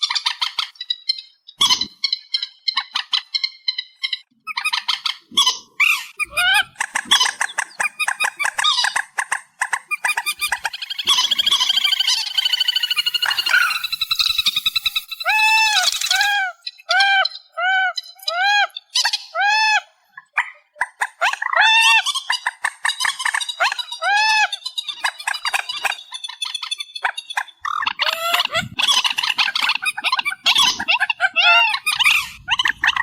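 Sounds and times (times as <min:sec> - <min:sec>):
marsh bird calls from lure: 0:09.8 - 0:16.6.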